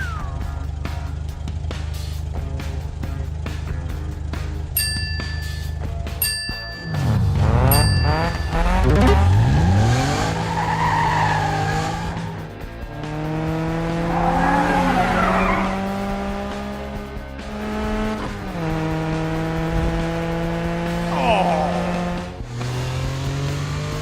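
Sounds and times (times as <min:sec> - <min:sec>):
cartoon engine revving: 0:07.0 - 0:12.2, 0:21.0 - 0:22.3
tyre squeals: 0:07.7 - 0:12.4, 0:14.1 - 0:15.8.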